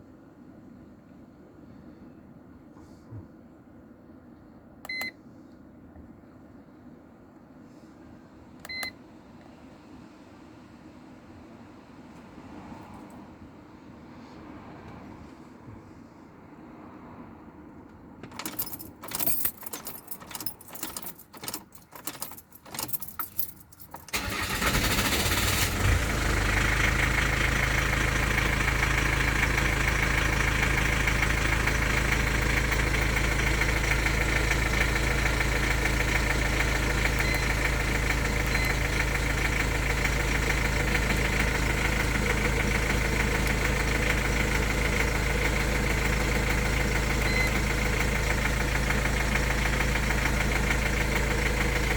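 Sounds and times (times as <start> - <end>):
diesel engine starting and idling: 18.3 - 51.9.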